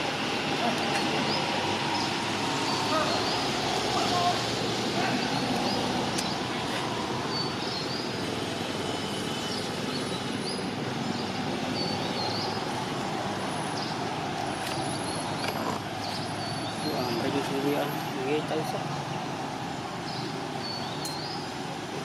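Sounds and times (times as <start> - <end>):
outdoor background noise: 0.0 - 22.0.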